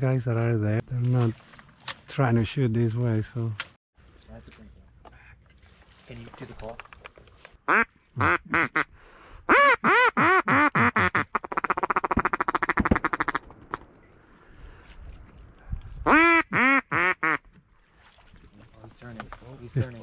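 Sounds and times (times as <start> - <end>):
duck call quacks: 7.7 - 8.9, 9.5 - 13.4, 16.1 - 17.4
duck call rapid chattering: 9.5 - 13.8, 16.1 - 17.4.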